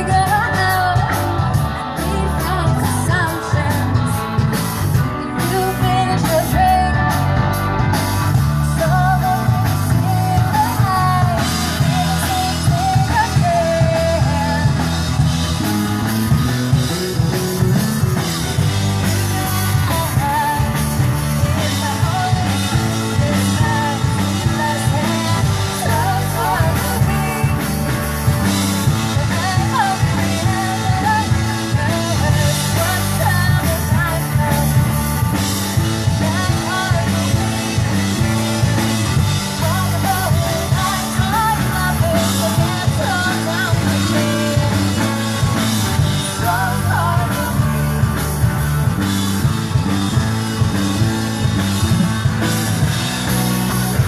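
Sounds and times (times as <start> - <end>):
person singing: 0.0 - 15.3, 17.1 - 48.4
rock band playing: 0.0 - 54.0.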